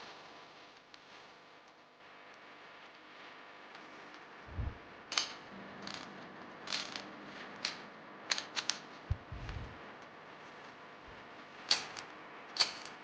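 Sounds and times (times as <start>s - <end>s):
dull low thumps: 4.5s - 4.8s, 9.1s - 9.8s.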